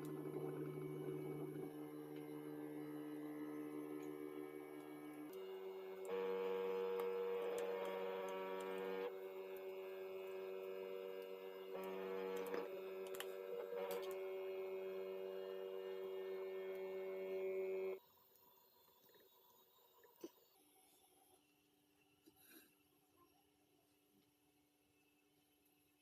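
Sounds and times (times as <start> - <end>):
background music with held chords: 0.0 - 18.0.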